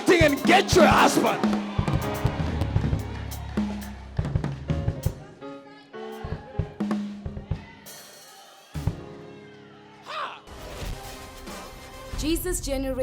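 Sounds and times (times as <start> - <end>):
music with drum kit beat: 0.0 - 5.4, 6.1 - 9.2
bass tones: 1.7 - 5.1.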